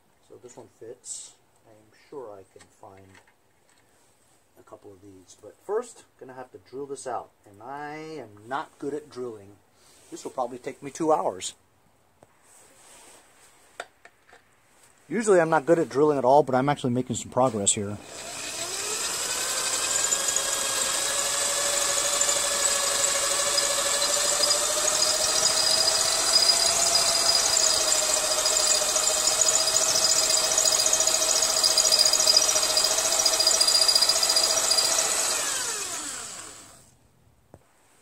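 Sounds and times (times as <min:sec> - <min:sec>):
power drill whining: 0:18.0 - 0:36.9.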